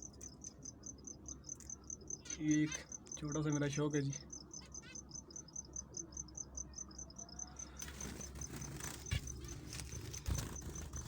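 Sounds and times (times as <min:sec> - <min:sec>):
insect chirping: 0:00.0 - 0:11.0
rustling noise: 0:07.8 - 0:11.0.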